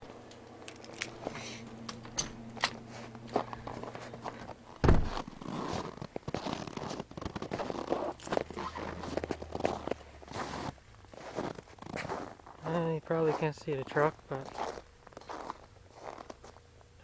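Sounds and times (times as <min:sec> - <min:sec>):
steady low hum: 0:00.0 - 0:17.0
footsteps: 0:00.7 - 0:16.6
heavy thump: 0:04.8 - 0:05.4.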